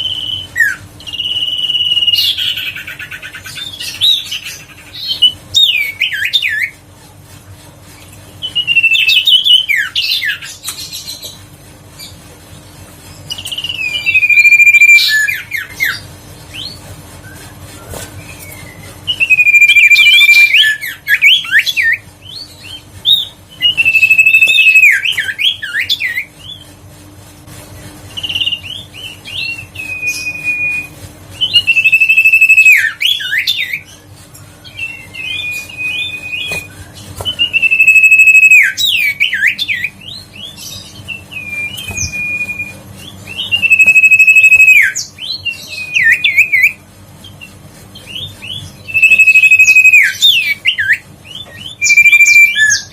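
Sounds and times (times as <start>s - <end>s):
bird singing whistled phrase: 13.4s - 15.9s, 17.3s - 22.5s, 23.1s - 26.2s, 28.2s - 33.8s, 34.7s - 40.2s, 41.2s - 46.8s, 48.1s - 52.9s.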